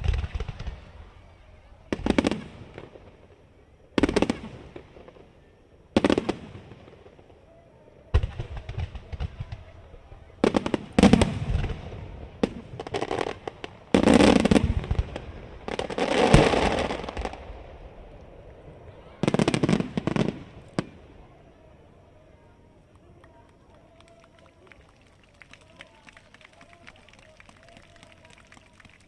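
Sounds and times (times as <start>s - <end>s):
firework shells booming: 0.0s - 3.4s, 8.1s - 21.6s
firework crackling: 0.0s - 7.4s, 8.1s - 29.0s.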